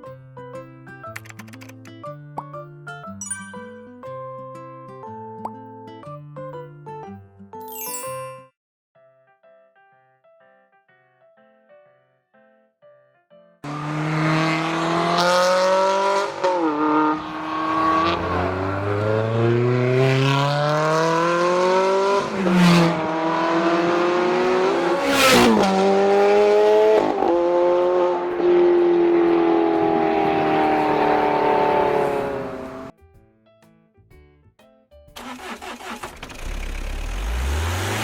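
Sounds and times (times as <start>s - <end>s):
car engine accelerating: 13.7s - 32.9s, 35.2s - 38.0s.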